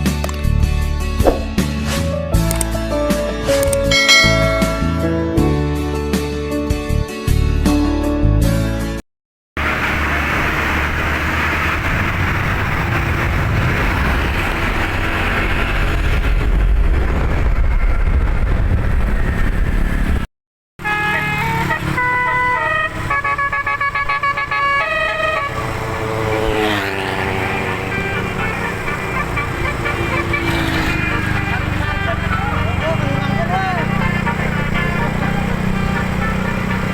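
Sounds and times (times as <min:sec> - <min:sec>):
road noise: 0:00.0 - 0:06.2, 0:09.6 - 0:36.9
vehicle engine running: 0:03.5 - 0:05.6, 0:09.6 - 0:36.9
musical air horn tune: 0:20.8 - 0:32.8, 0:34.0 - 0:36.9.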